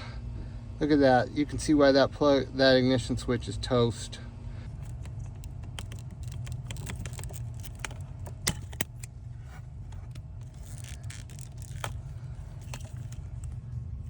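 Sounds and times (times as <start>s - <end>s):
steady low hum: 0.0s - 14.0s
small parts clicking and rattling: 4.7s - 13.7s.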